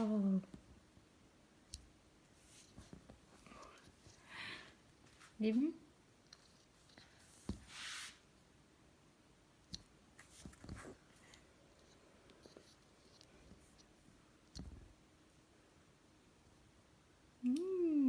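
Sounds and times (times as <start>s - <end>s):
soft hiss: 0.0s - 18.0s.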